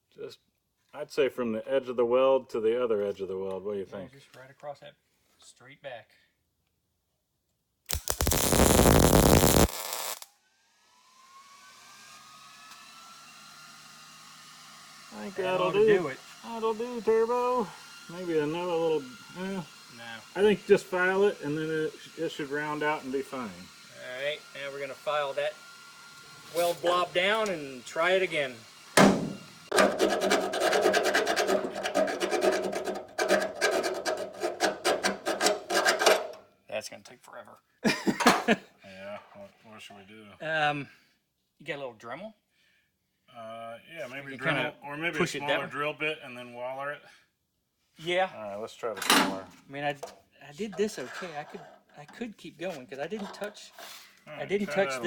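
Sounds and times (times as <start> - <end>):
welding arc crackling: 7.9 - 10.3
faint whir rising in pitch: 10.5 - 13.4
hand file rasping on metal: 29.4 - 36.4.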